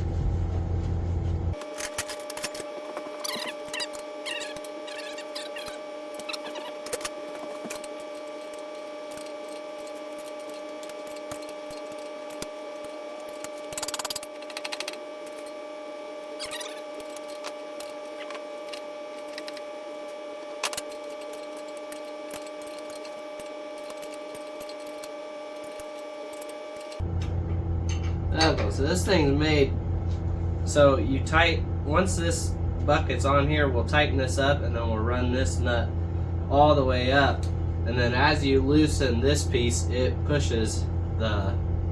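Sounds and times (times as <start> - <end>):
excavator engine humming: 26.9 - 41.9.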